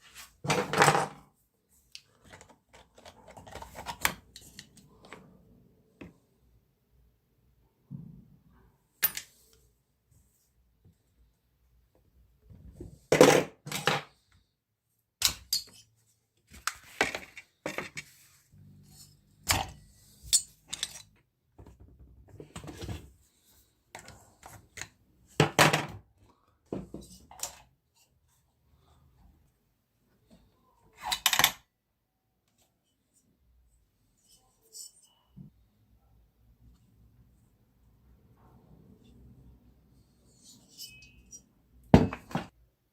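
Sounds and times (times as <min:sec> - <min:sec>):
metal tools clinking and clattering: 0:20.2 - 0:21.2.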